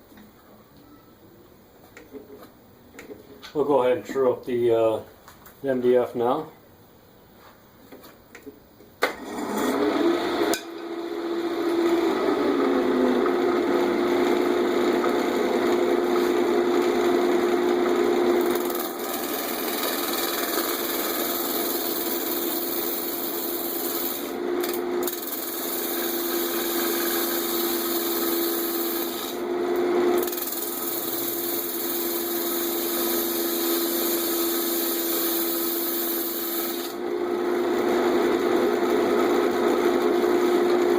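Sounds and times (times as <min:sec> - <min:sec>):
wood lathe humming: 0:09.2 - 0:29.6, 0:30.2 - 0:39.9
gouge scraping spinning wood: 0:18.4 - 0:29.4, 0:30.2 - 0:37.0.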